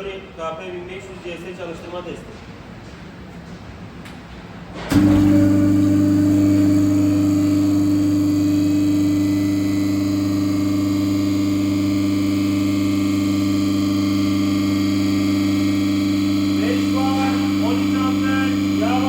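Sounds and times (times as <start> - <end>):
refrigeration compressor humming: 4.6 - 19.0.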